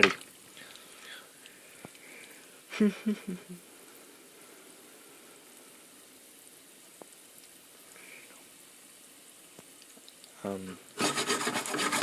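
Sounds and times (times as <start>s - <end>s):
faint sizzle in a pan: 0.0s - 11.0s
light tick: 0.7s - 2.4s, 9.6s - 10.4s.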